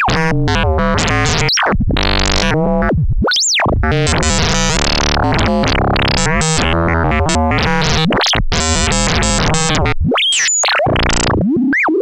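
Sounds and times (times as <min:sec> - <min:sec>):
modular synthesizer notes: 0:00.0 - 0:02.9, 0:03.8 - 0:10.0.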